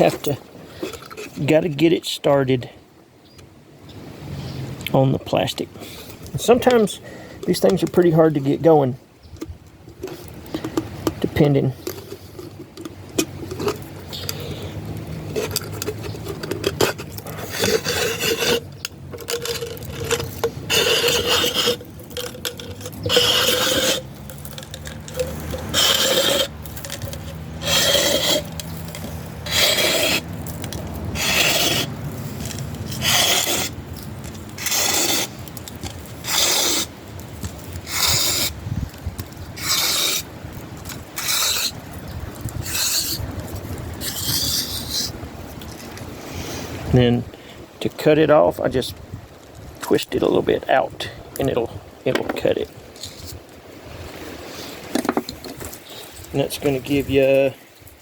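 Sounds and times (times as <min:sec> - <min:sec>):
plastic scraping against blade: 0:09.4 - 0:46.0.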